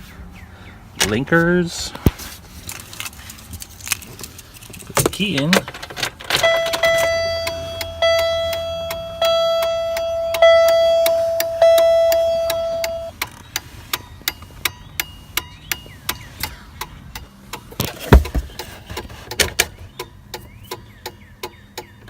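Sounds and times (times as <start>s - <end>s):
turn-signal relay clicking: 5.0s - 18.6s
dashboard warning chime: 6.3s - 13.2s, 14.0s - 16.0s.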